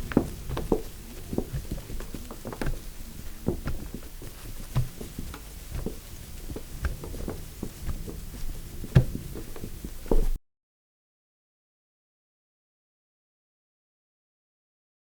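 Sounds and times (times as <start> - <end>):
soft thumps and taps: 0.0 - 10.4.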